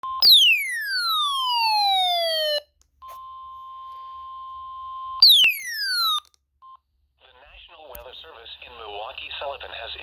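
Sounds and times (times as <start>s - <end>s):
falling siren-like sweep: 0.3s - 2.6s
steady single-pitch alert tone: 5.2s - 6.2s.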